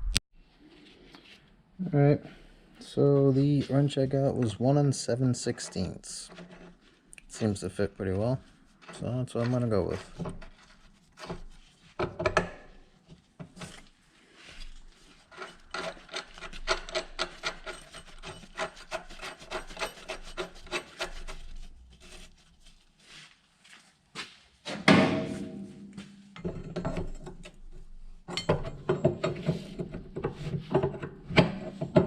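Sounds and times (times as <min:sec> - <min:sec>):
wrench clicking and scraping on nut: 0:15.2 - 0:21.6.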